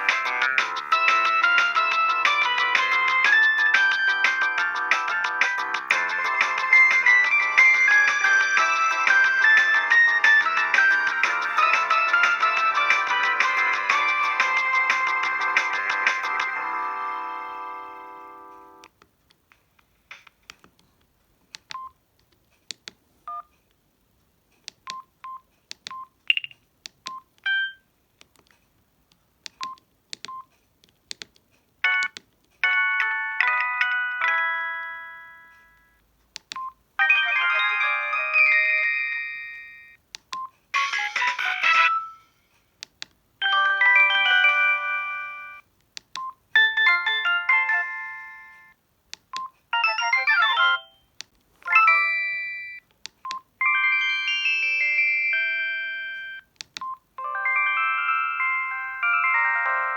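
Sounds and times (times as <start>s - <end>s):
phone keypad clicks and beeps: 21.6s - 22.0s, 23.3s - 23.5s, 24.7s - 27.8s, 29.4s - 32.3s, 35.4s - 36.8s, 40.2s - 40.6s, 46.0s - 46.8s, 49.1s - 53.5s, 56.1s - 57.0s
synthesized phone alert jingles: 49.8s - 51.1s, 51.7s - 52.8s.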